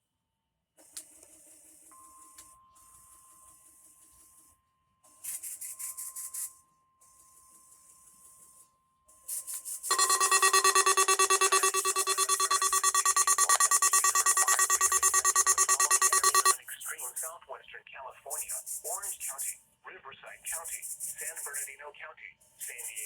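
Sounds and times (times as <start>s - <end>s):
faint steady tone: 9.9s - 16.6s
pulsing electronic alert signal: 9.9s - 16.6s.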